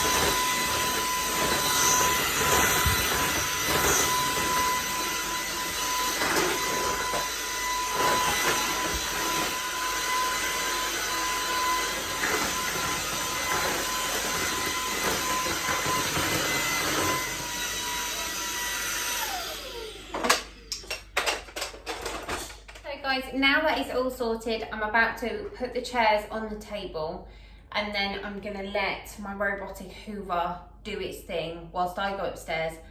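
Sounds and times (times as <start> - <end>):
vacuum motor winding down: 0.0 - 20.9
vacuum cleaner running: 0.0 - 21.4.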